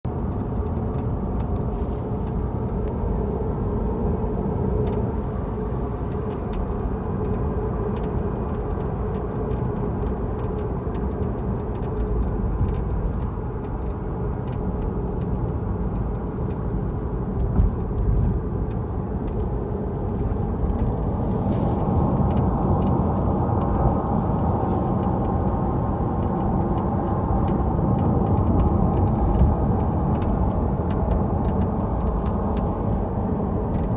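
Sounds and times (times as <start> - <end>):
road and tyre rumble: 0.0 - 33.9
light rattling clicks: 6.0 - 21.2, 22.1 - 33.0.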